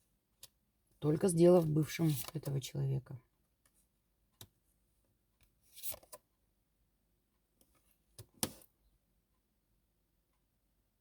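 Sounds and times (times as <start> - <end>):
cards rustling: 1.8 - 2.5.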